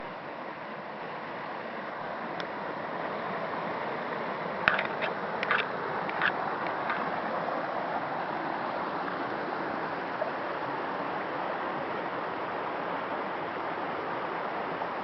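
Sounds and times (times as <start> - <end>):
waterfall rushing: 0.7 - 15.0.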